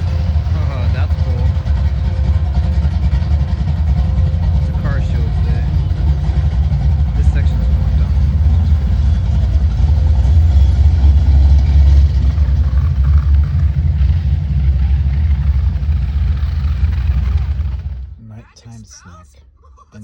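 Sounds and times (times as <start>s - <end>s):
vehicle engine rumbling: 0.0s - 19.0s.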